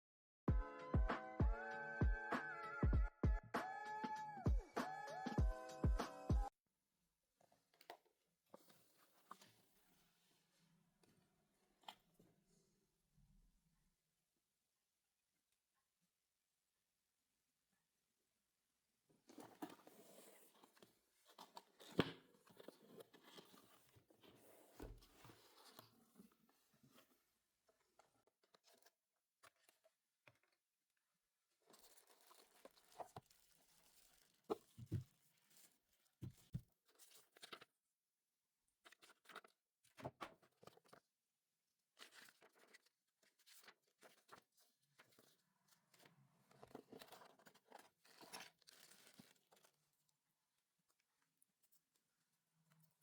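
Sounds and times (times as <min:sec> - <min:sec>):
packaging rustling and tearing: 0:46.7 - 0:49.8.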